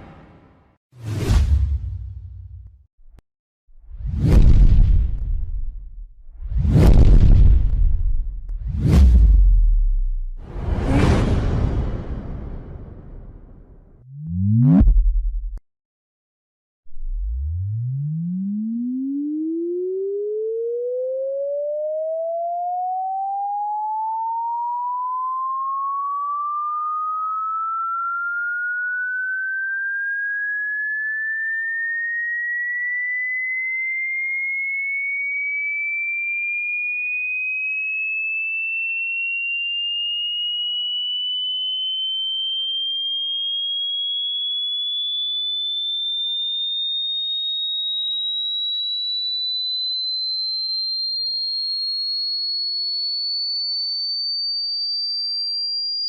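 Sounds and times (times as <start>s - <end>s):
electronic sine-wave tone sweeping upward: 5.7s - 15.6s, 16.9s - 34.5s, 40.1s - 48.6s.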